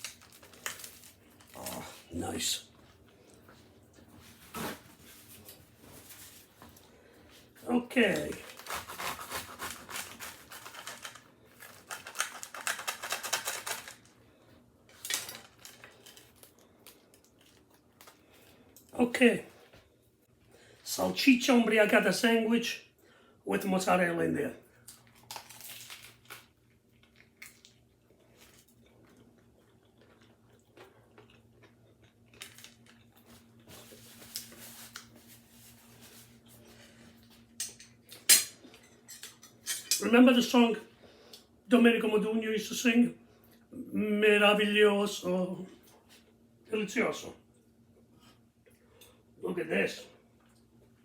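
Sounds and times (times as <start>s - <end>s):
crusty sandwich crackling: 0.0s - 2.0s, 8.0s - 14.2s, 14.9s - 18.6s, 24.9s - 36.2s.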